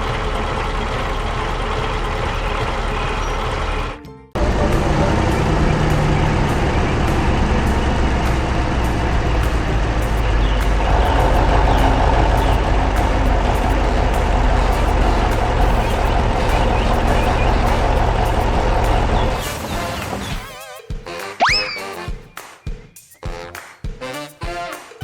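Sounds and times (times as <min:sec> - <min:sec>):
truck engine droning: 0:00.0 - 0:19.4.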